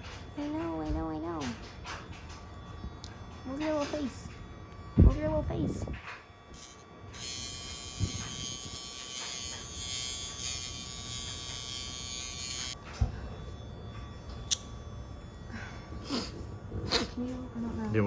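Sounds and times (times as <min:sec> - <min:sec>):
electric nail grinder running: 0:04.7 - 0:13.0
sharp click: 0:14.5 - 0:14.7.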